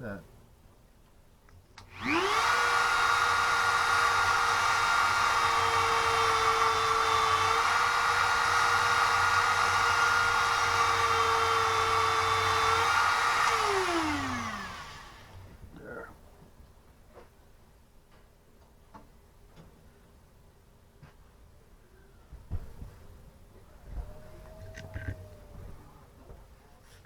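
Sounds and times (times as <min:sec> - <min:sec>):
rotary tool high whine: 0:01.8 - 0:15.5.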